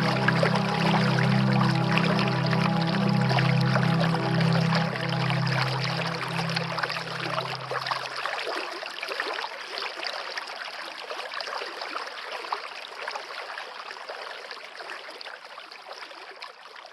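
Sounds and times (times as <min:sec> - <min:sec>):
low music notes: 0:00.0 - 0:08.3
stream water trickling: 0:00.0 - 0:16.9.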